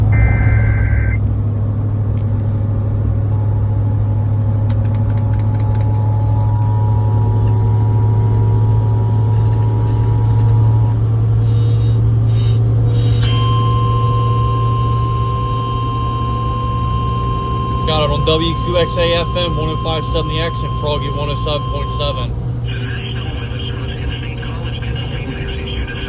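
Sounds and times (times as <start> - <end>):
data squeal: 0.0 - 1.2, 11.4 - 26.0
car road drone: 0.0 - 26.0
two-tone attention signal: 0.1 - 1.2, 11.4 - 22.9
quick clicks: 4.6 - 6.1.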